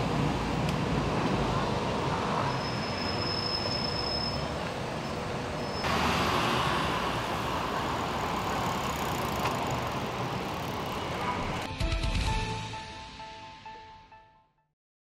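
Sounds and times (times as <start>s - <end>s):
street traffic: 0.0s - 11.8s.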